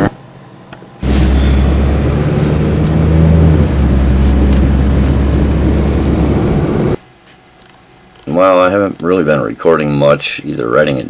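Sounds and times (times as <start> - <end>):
car engine rumbling: 1.0 - 7.0.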